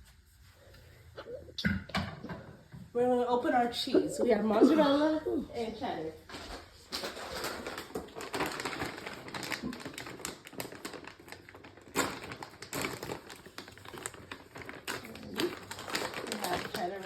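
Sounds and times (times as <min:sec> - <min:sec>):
packaging crinkling: 0:06.4 - 0:17.0.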